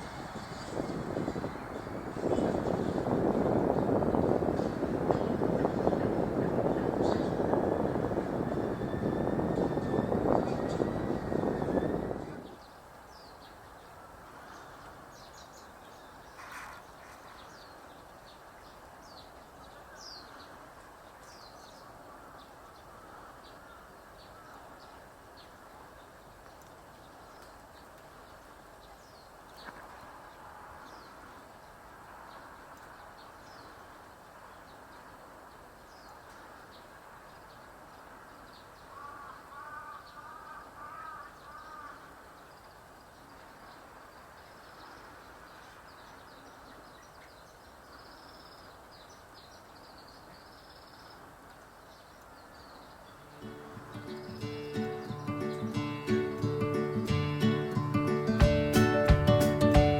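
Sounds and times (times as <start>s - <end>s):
small birds chirping: 34.5s - 57.1s
crow cawing: 38.9s - 42.1s.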